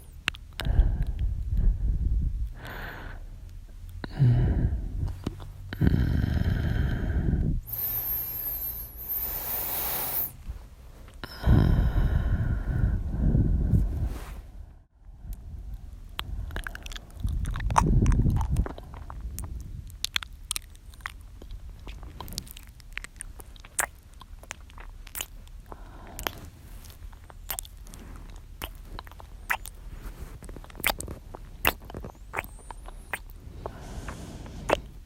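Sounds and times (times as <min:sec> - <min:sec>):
breath on microphone: 0:05.8 - 0:10.6, 0:33.1 - 0:35.0
wet mouth clicks and smacks: 0:16.2 - 0:29.8, 0:30.4 - 0:35.0.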